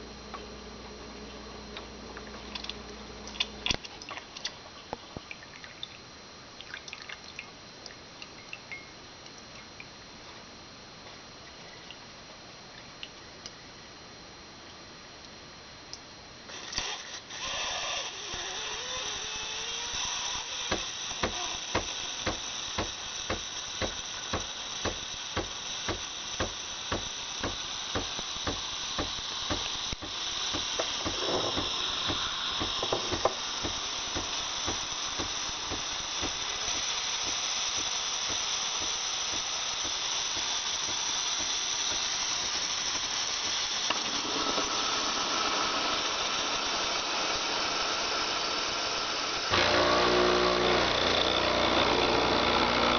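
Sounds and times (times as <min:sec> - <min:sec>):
steam wand hissing: 0:16.5 - 0:52.9
espresso machine pump ticking: 0:18.3 - 0:44.1.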